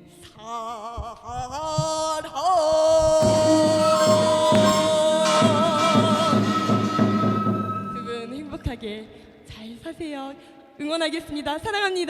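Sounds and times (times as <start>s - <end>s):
drum-backed accompaniment: 3.2s - 8.8s
person singing with vibrato: 3.2s - 8.9s.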